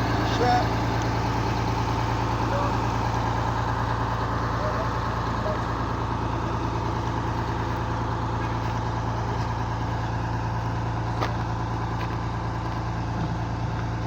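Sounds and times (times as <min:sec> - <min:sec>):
heavy engine running: 0:00.0 - 0:14.0.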